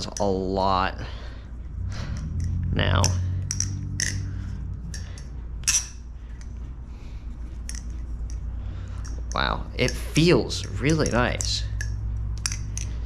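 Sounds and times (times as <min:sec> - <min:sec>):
steady low hum: 0:00.0 - 0:13.0
butterfly knife metallic clicks: 0:02.1 - 0:04.3, 0:09.0 - 0:13.0.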